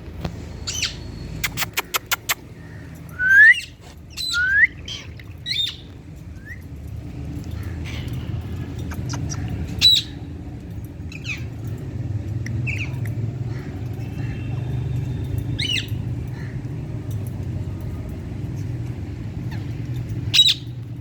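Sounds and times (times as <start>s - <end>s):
quick clicks: 1.4s - 3.1s.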